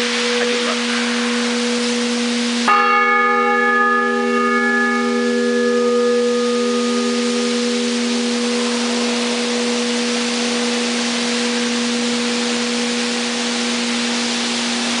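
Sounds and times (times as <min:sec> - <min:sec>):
steady hiss: 0:00.0 - 0:02.8, 0:06.4 - 0:15.0
large bell ringing on: 0:00.0 - 0:15.0.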